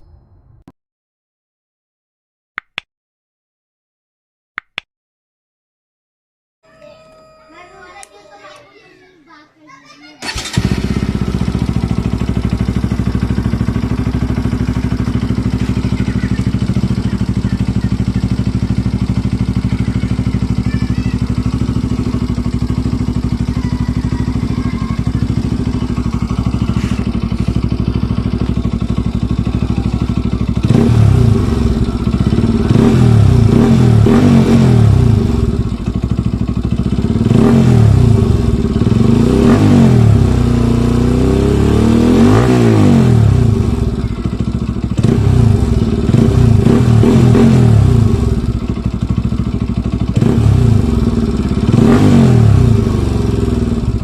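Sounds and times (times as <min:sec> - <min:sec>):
motorcycle engine idling and revving: 0:10.2 - 0:54.0.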